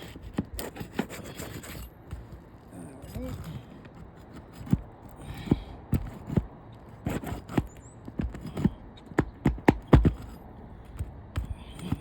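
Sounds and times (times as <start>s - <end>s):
taps and knocks on shingle roof: 3.2s - 12.0s.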